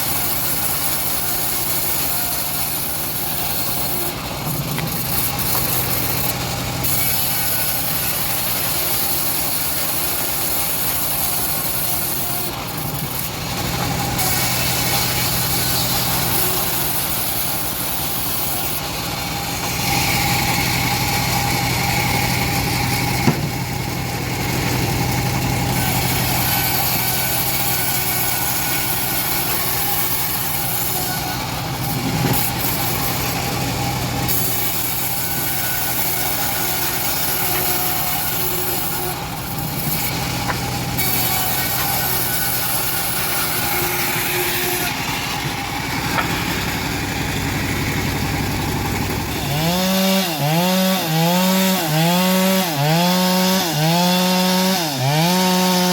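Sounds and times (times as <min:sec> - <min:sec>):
bandsaw mill engine running: 0:00.0 - 0:55.9
sharp knock: 0:23.2 - 0:23.7.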